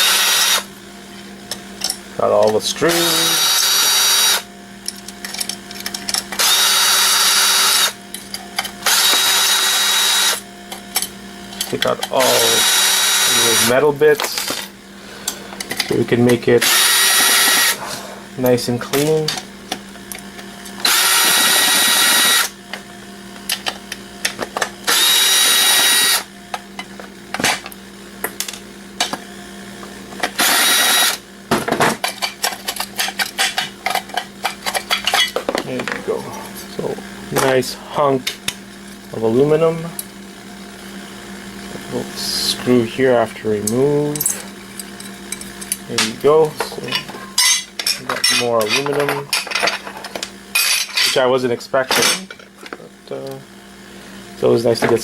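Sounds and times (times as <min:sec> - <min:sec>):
power drill whining: 0:00.0 - 0:00.7, 0:02.8 - 0:04.5, 0:06.3 - 0:08.0, 0:08.8 - 0:10.4, 0:12.2 - 0:13.9, 0:16.6 - 0:18.2, 0:20.8 - 0:22.6, 0:24.8 - 0:26.3, 0:30.2 - 0:31.2
clicks and rattles of parts: 0:04.9 - 0:06.4, 0:30.2 - 0:36.1, 0:43.7 - 0:51.2.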